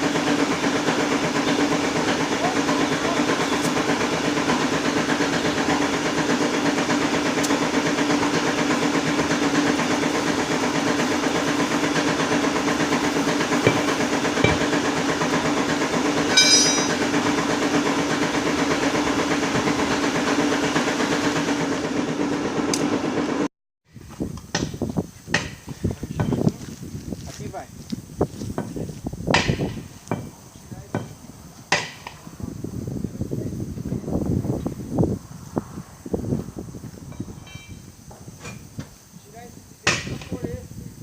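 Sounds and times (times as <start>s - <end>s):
constant hiss: 24.8s - 41.0s.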